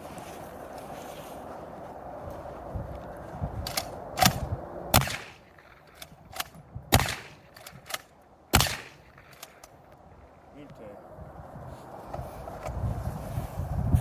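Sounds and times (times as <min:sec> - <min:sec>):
loud shotgun shots: 0:03.7 - 0:09.6.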